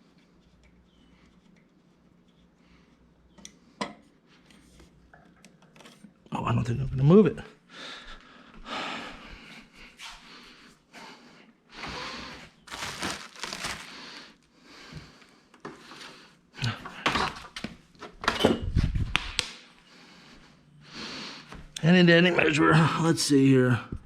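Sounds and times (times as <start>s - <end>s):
rustling: 12.7s - 14.4s.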